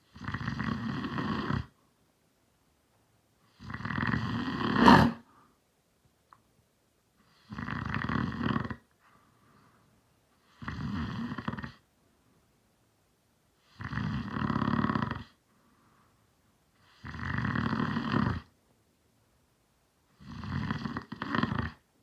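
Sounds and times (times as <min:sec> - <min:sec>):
man snoring: 0:00.1 - 0:01.7, 0:03.6 - 0:05.2, 0:07.5 - 0:08.8, 0:10.6 - 0:11.8, 0:13.8 - 0:15.3, 0:17.0 - 0:18.4, 0:20.2 - 0:21.8.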